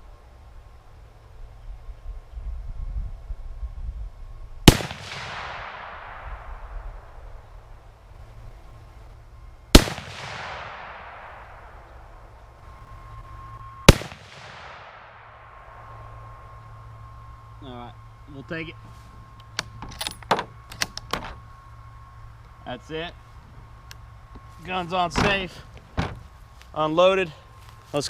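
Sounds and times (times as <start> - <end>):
gunshot echo: 4.7 - 7.4, 9.8 - 12.3, 13.9 - 15.8
rifle shots: 4.7 - 7.4, 9.7 - 12.4, 13.9 - 15.6.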